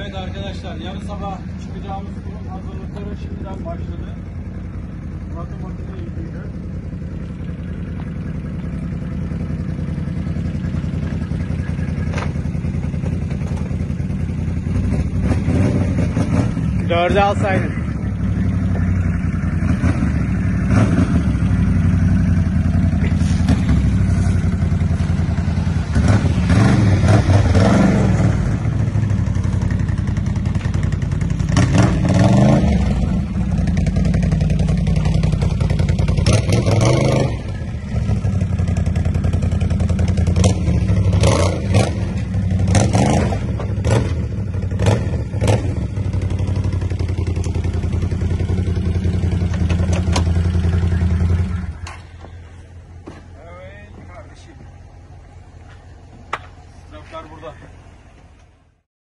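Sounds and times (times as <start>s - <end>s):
atv engine revving: 0.0s - 52.6s.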